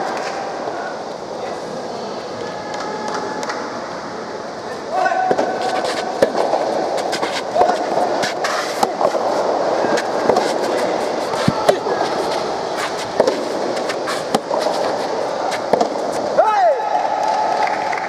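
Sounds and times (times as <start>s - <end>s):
crowd murmur: 0.0s - 16.4s
shoes squeaking on court: 4.6s - 16.3s
racket hitting ball: 4.7s - 16.3s.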